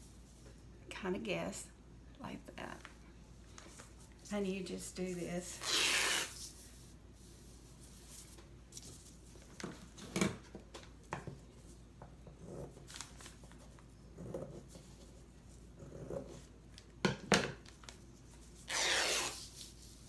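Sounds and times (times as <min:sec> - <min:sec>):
fabric ripping by hand: 0:05.6 - 0:06.4, 0:18.7 - 0:19.5.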